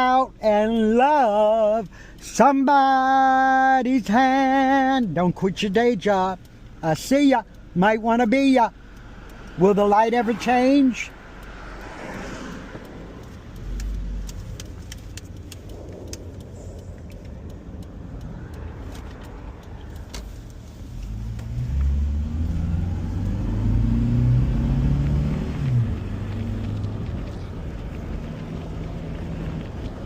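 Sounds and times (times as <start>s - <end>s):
car engine rumble: 0.0s - 30.0s.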